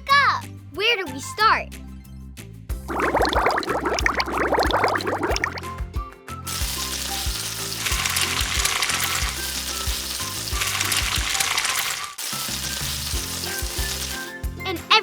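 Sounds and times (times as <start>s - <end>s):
bouncy music with steady beat: 2.7s - 7.4s, 13.0s - 14.8s
sizzling frying sound effect: 2.7s - 15.0s.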